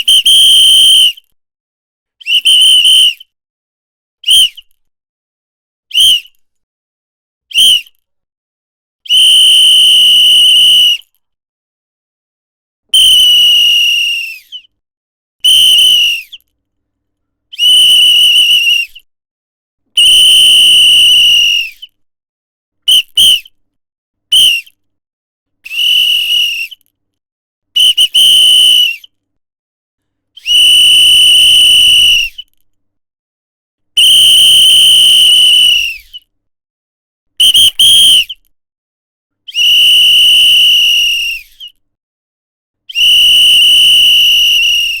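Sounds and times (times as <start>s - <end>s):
whistle blasts: 0.0s - 1.2s, 2.2s - 3.2s, 4.2s - 4.6s, 5.9s - 6.3s, 7.5s - 7.9s, 9.1s - 11.1s, 12.9s - 14.7s, 15.4s - 16.4s, 17.6s - 19.0s, 20.0s - 21.9s, 22.9s - 23.5s, 24.3s - 24.8s, 25.7s - 26.8s, 27.8s - 29.1s, 30.4s - 32.5s, 34.0s - 36.2s, 37.4s - 38.4s, 39.5s - 41.8s, 42.9s - 45.0s.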